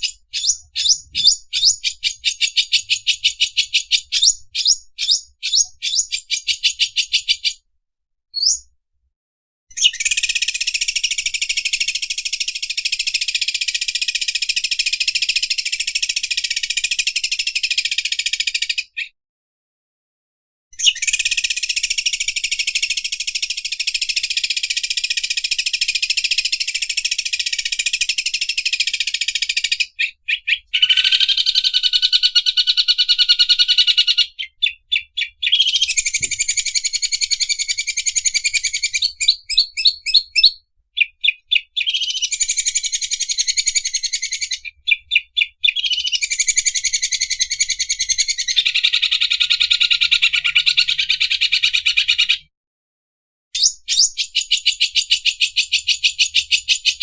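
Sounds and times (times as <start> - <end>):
bird singing fast chatter: 0.0 - 7.6, 9.8 - 19.1, 20.8 - 52.4.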